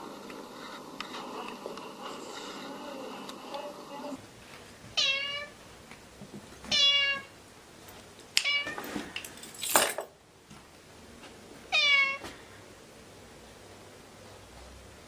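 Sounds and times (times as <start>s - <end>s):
cat meowing: 5.0s - 5.5s, 6.7s - 7.3s, 11.7s - 12.2s.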